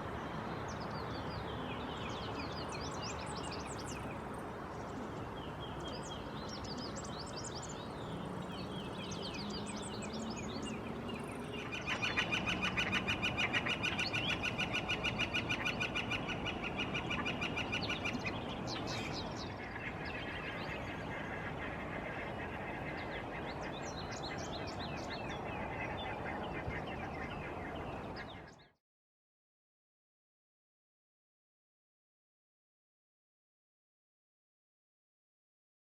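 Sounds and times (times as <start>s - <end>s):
small birds chirping: 0.0s - 20.2s.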